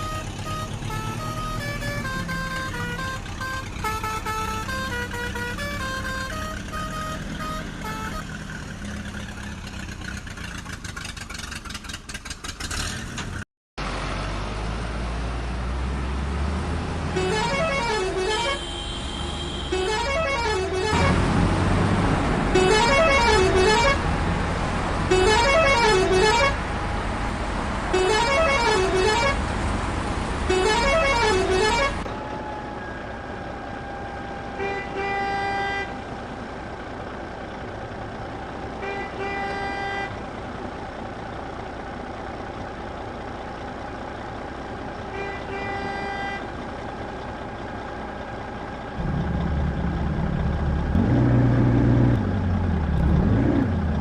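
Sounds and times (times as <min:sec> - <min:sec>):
horn honk: 0:00.0 - 0:08.4, 0:17.1 - 0:21.3, 0:22.5 - 0:24.1, 0:25.1 - 0:26.6, 0:27.9 - 0:29.4, 0:30.5 - 0:32.1, 0:34.6 - 0:36.0, 0:38.8 - 0:40.2, 0:45.1 - 0:46.5
low engine rumble: 0:35.9 - 0:54.0.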